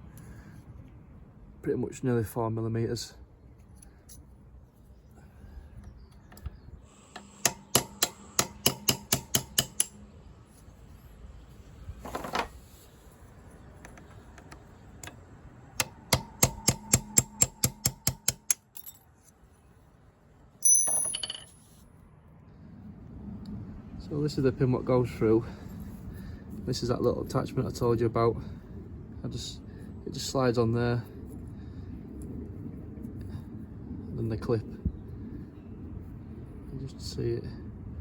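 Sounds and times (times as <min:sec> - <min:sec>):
hammer tapping metal punch: 0:07.2 - 0:10.0, 0:15.8 - 0:18.9.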